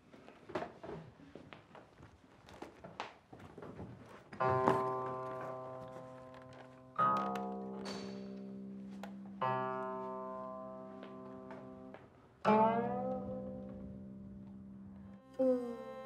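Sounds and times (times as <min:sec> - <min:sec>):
plucked zither notes: 0:04.4 - 0:16.0.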